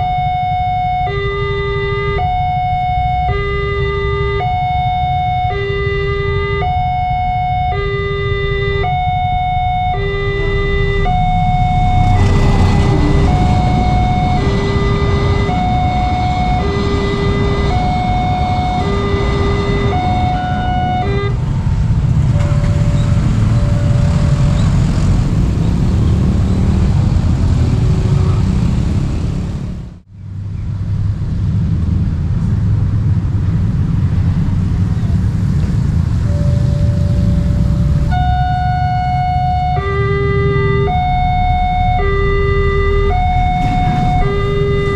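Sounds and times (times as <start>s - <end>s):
level crossing warning siren: 0.0s - 29.4s, 35.9s - 44.9s
passing vehicles rumbling: 0.0s - 44.9s.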